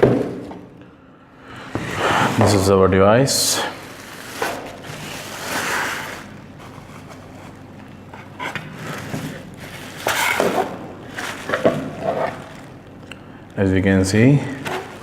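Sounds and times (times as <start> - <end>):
packaging rustle: 3.8 - 7.6, 8.6 - 12.9.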